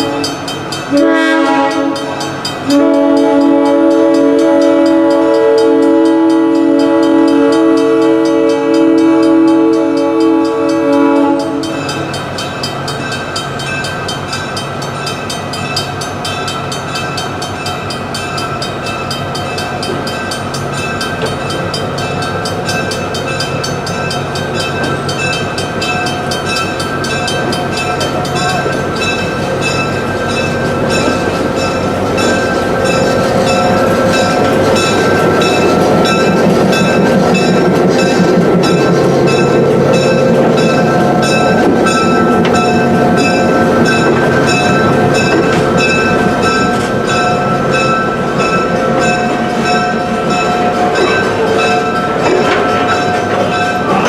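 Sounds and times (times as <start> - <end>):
train horn blast: 0.0 - 12.0
train rolling rumble: 0.0 - 54.0.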